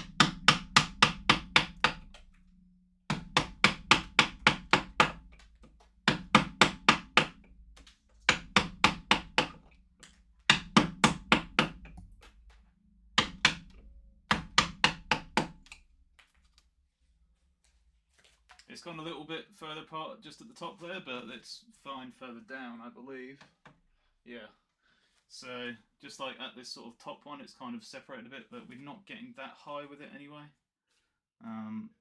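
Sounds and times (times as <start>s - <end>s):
mallet striking carving tool: 0.0s - 12.6s, 13.2s - 15.8s.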